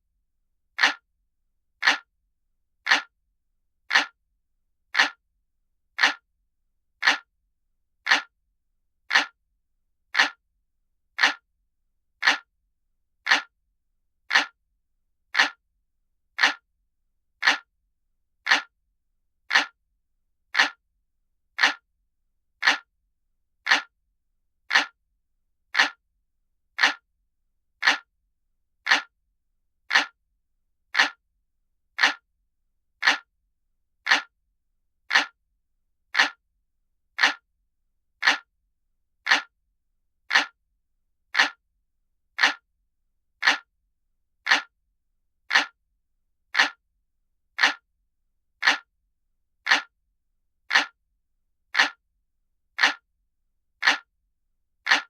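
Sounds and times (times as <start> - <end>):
clock ticking: 0.8 - 1.0, 1.8 - 2.1, 2.9 - 3.1, 3.9 - 4.2, 5.0 - 5.2, 6.0 - 6.2, 7.0 - 7.3, 8.1 - 8.3, 9.1 - 9.4, 10.2 - 10.4, 11.2 - 11.4, 12.2 - 12.5, 13.3 - 13.5, 14.3 - 14.6, 15.4 - 15.6, 16.4 - 16.6, 17.4 - 17.7, 18.4 - 18.7, 19.5 - 19.8, 20.6 - 20.8, 21.6 - 21.8, 22.6 - 22.9, 23.6 - 23.9, 24.7 - 25.0, 25.8 - 26.0, 26.8 - 27.0, 27.8 - 28.1, 28.8 - 29.1, 29.9 - 30.2, 31.0 - 31.2, 32.0 - 32.2, 33.0 - 33.3, 34.0 - 34.3, 35.1 - 35.4, 36.1 - 36.4, 37.2 - 37.4, 38.2 - 38.5, 39.2 - 39.5, 40.3 - 40.6, 41.3 - 41.6, 42.4 - 42.6, 43.4 - 43.7, 44.4 - 44.7, 45.5 - 45.8, 46.5 - 46.8, 47.6 - 47.8, 48.6 - 48.9, 49.6 - 49.9, 50.7 - 51.0, 51.7 - 52.0, 52.8 - 53.0, 53.8 - 54.1.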